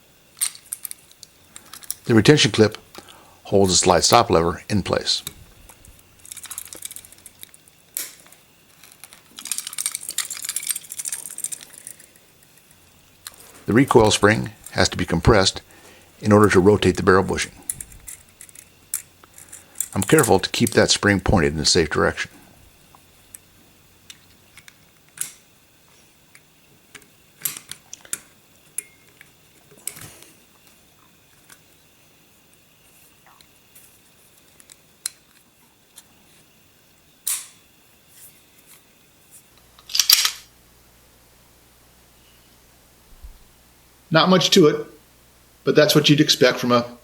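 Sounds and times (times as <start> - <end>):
metal pistol parts clicking: 0.4 - 2.1, 5.2 - 13.4, 17.6 - 20.9, 37.3 - 37.6, 39.8 - 40.5.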